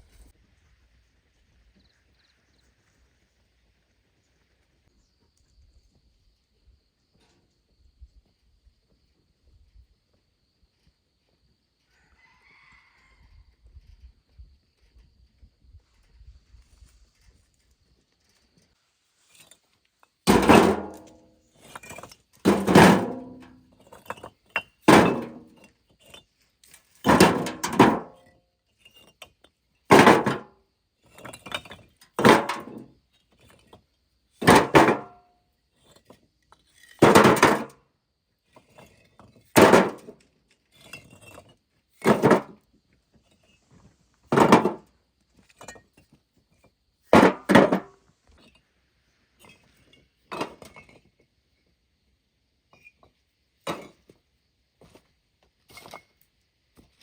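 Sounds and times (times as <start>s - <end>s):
hand tool striking heavily: 20.3s - 21.1s.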